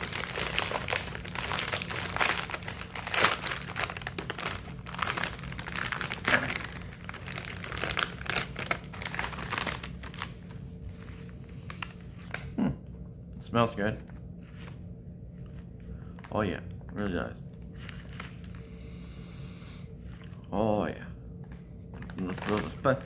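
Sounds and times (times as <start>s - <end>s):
chip bag crinkling: 0.0s - 12.5s, 22.0s - 23.0s.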